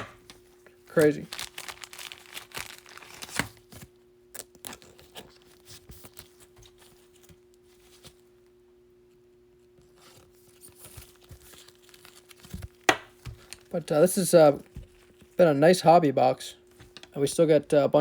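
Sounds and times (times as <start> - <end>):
trading cards clicking and rustling: 0.0 - 8.2, 10.0 - 15.4
faint electrical hum: 0.0 - 18.0.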